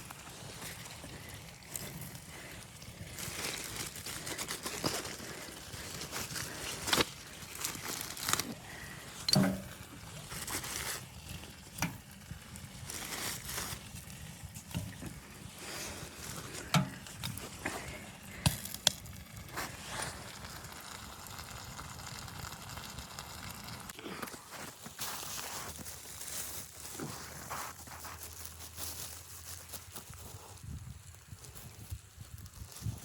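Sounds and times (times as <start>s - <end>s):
objects being handled: 3.1s - 20.3s.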